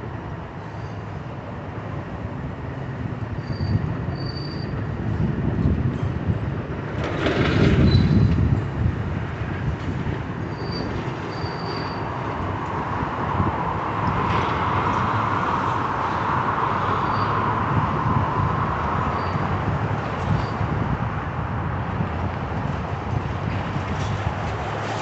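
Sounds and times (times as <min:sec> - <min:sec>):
demolition machinery rumbling: 0:04.7 - 0:11.3.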